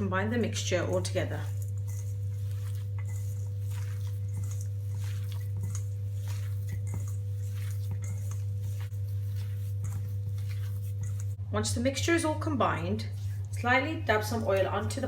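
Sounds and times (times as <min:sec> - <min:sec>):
hands squishing mashed potato: 0:00.0 - 0:11.4, 0:12.7 - 0:15.0
low electrical hum: 0:00.0 - 0:15.0.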